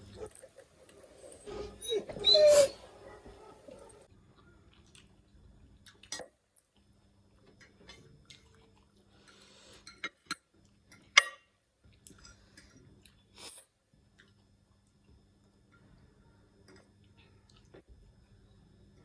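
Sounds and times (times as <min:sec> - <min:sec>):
chewing and mouth sounds: 0:04.4 - 0:09.4, 0:13.0 - 0:15.2.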